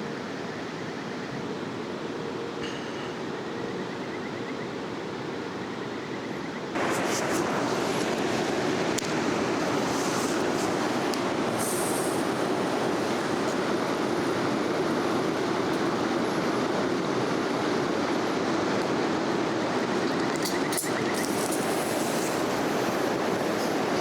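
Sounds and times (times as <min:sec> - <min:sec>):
stream water rushing: 0:06.8 - 0:24.0.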